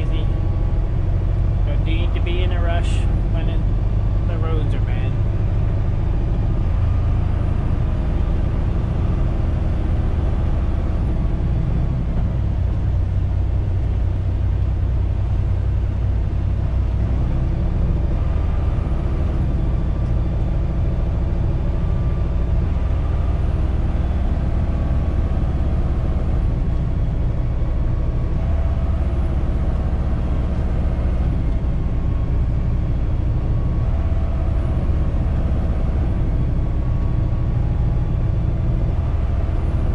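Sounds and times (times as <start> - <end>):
truck diesel engine running: 0.0 - 39.9.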